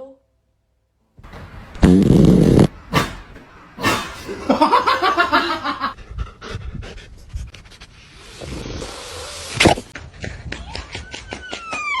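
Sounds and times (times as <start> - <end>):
dog vocal sounds: 2.3 - 6.2
dog panting: 2.4 - 8.0.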